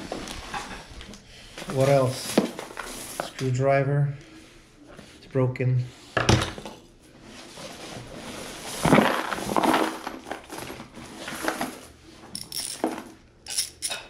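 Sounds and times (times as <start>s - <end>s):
coins clinking and rattling: 12.3s - 14.0s.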